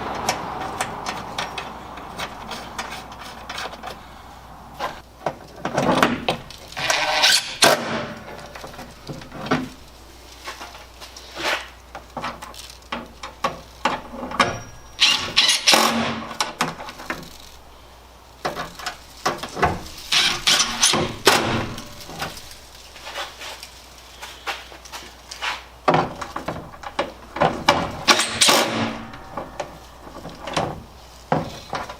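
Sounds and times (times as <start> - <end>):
tools clicking and rattling: 0.0 - 4.1.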